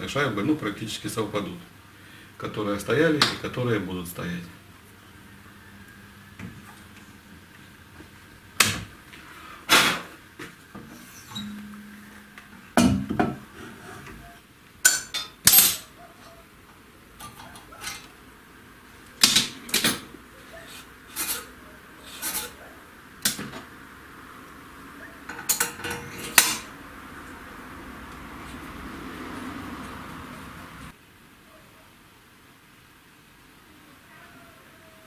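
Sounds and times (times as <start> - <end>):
metal tools clinking and knocking: 14.9 - 15.9, 25.3 - 26.6.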